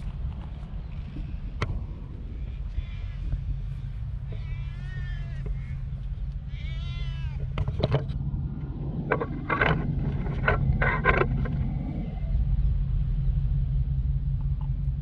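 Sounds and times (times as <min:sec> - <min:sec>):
steady low rumble: 0:00.0 - 0:15.0
cat meowing: 0:04.3 - 0:05.8, 0:06.5 - 0:07.5.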